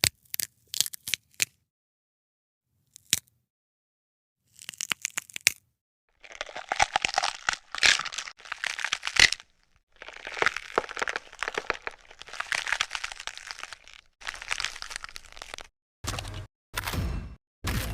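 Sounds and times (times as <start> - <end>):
bone crackling and crunching: 0.0 - 1.6, 4.5 - 16.4.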